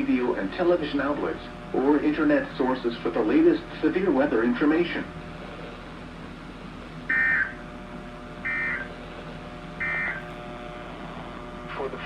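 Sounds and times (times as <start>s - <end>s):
faint hum: 0.0s - 12.0s
radio hiss: 8.4s - 10.4s
warbling digital tone bursts: 8.5s - 8.9s, 9.8s - 10.3s.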